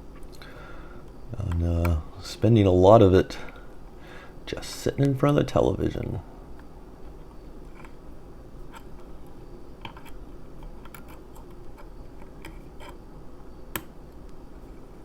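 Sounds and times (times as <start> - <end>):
lock pick clicking and scraping: 9.8 - 13.0.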